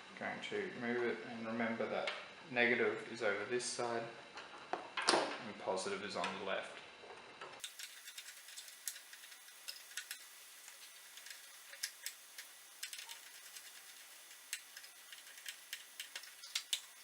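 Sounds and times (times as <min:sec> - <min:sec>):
small connectors clicking: 0:07.6 - 0:17.0.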